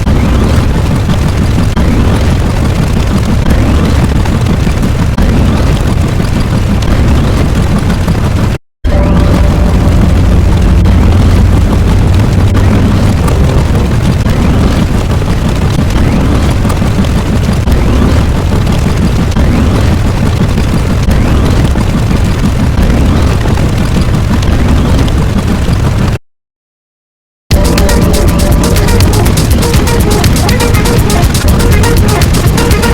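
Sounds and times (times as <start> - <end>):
explosion-like rumble: 0.0 - 26.2.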